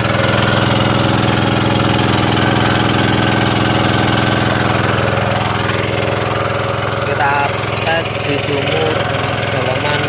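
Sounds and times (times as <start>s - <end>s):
diesel water pump engine running: 0.0s - 10.0s.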